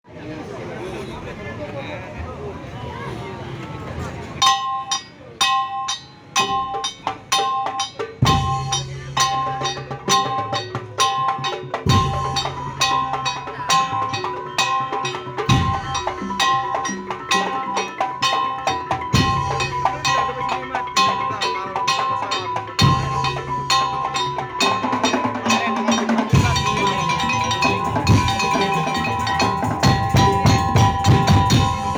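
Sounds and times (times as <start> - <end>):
bright pitched notes: 11.4 - 31.9.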